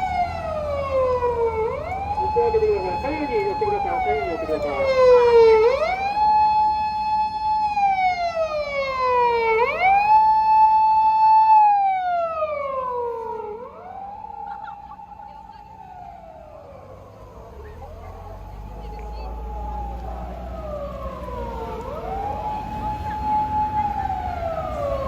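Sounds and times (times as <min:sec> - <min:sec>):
police car siren wailing: 0:00.0 - 0:25.0.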